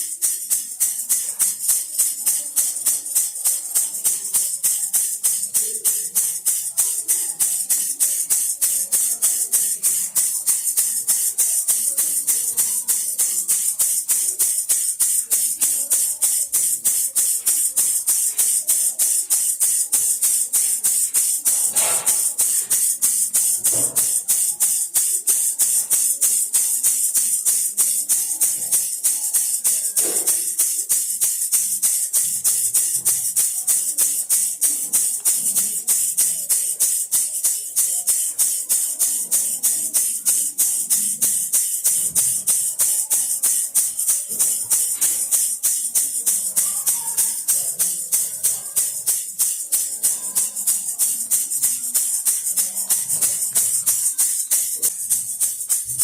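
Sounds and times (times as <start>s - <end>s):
baby rattle shaking: 0.0s - 56.0s.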